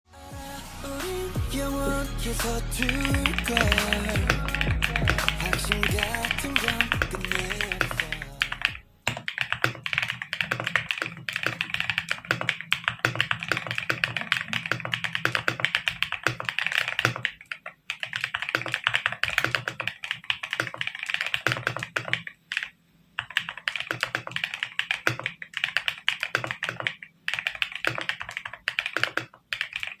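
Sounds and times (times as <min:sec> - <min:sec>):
keyboard typing clicks: 0:02.8 - 0:30.0.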